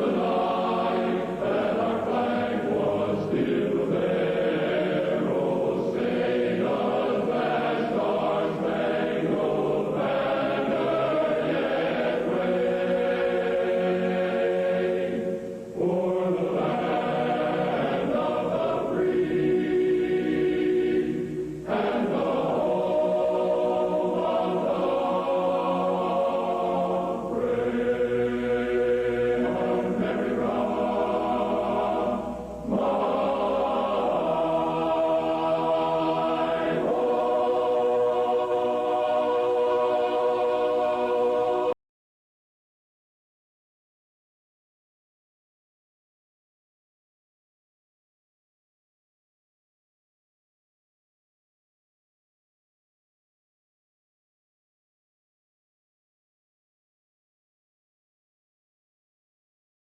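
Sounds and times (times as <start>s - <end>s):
choir singing an anthem: 0.0s - 41.8s.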